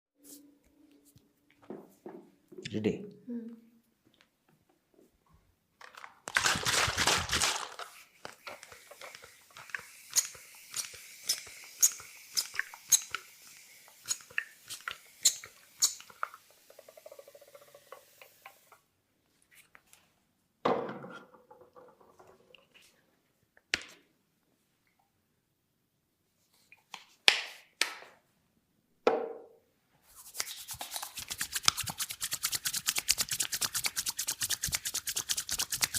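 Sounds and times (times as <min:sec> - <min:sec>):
hands rubbing head: 0:30.0 - 0:35.9.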